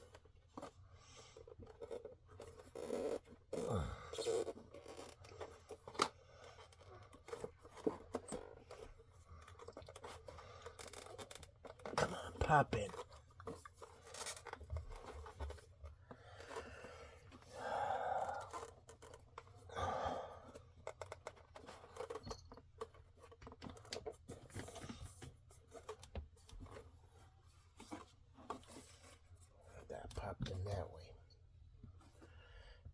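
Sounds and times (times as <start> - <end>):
plastic parts clicking and scraping: 4.4 - 16.6, 20.5 - 26.9.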